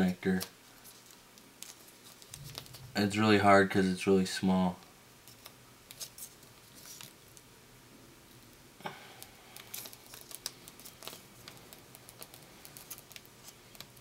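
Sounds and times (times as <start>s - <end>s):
fingers rustling: 0.2s - 3.0s, 9.2s - 14.0s.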